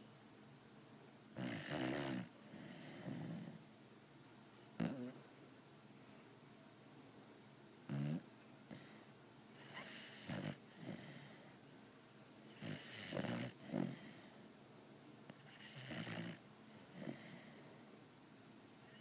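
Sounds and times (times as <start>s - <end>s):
dog snoring loudly: 1.4s - 3.6s, 4.8s - 5.2s, 7.9s - 8.9s, 9.6s - 11.4s, 12.5s - 14.3s, 15.4s - 17.6s.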